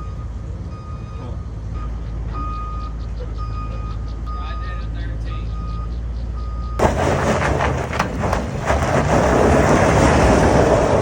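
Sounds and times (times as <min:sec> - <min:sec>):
vehicle reversing beep: 0:00.0 - 0:07.1
low engine hum: 0:00.0 - 0:11.0
truck noise with clanks: 0:00.0 - 0:11.0.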